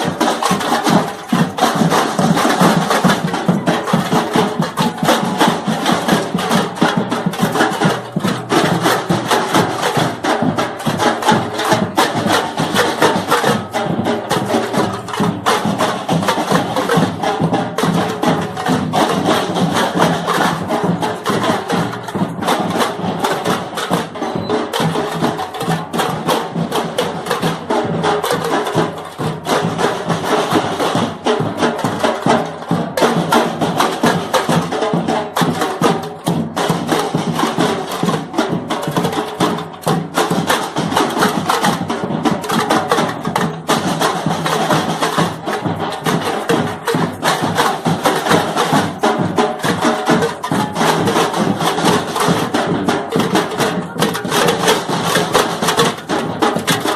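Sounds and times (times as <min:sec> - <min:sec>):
percussion ensemble drumming: 0:00.0 - 0:56.9.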